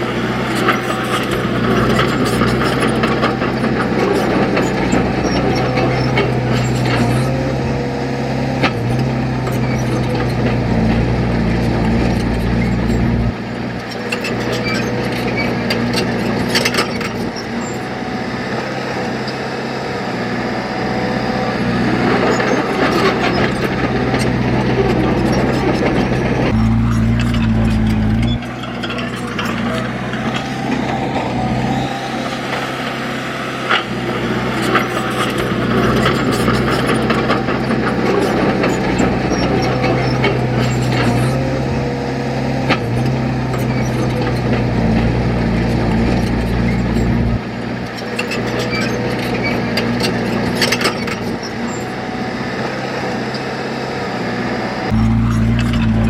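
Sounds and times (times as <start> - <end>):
heavy machine diesel engine: 0.0 - 56.0
metal knocks and clanks: 22.2 - 31.8, 54.9 - 56.0.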